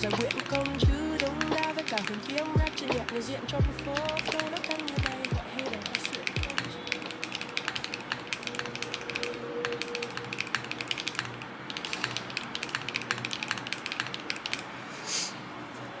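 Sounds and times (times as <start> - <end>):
typing on mechanical keyboard: 0.0 - 14.7.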